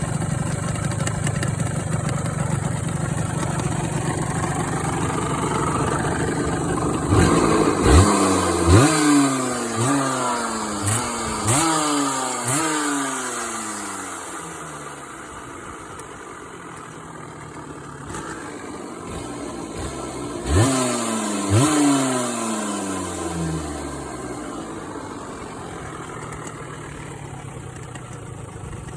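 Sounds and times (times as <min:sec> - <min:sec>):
motorcycle engine idling: 0:00.0 - 0:28.9
engine revving: 0:03.6 - 0:16.2, 0:18.0 - 0:28.0.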